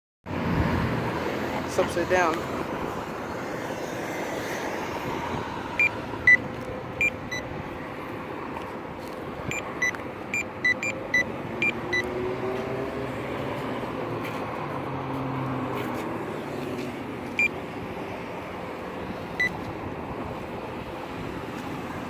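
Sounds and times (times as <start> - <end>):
road traffic: 0.2 - 22.0
crosswalk button beeps: 5.8 - 7.5, 9.5 - 12.2, 17.3 - 17.6, 19.4 - 19.6.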